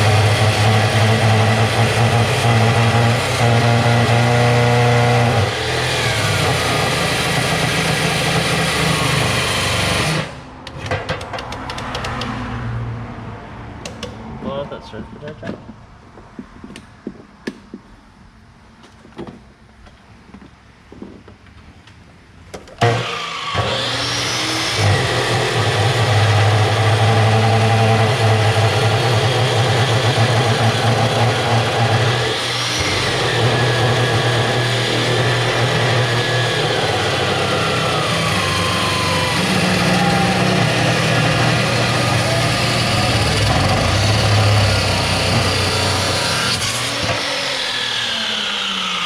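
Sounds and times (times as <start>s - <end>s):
electric power tool motor: 0.0s - 10.4s, 22.8s - 49.0s.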